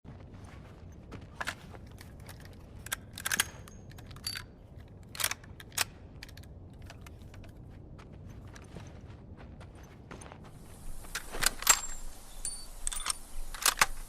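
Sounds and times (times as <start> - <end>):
rifle action clicking: 1.4 - 7.5, 12.8 - 14.0.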